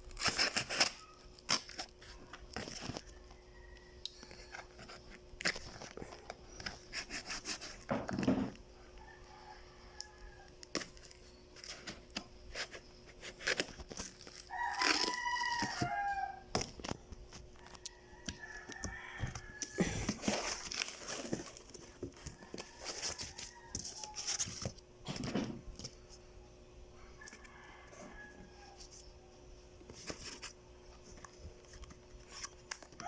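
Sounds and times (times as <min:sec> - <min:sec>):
packaging rustling and clicking: 0:10.6 - 0:26.0.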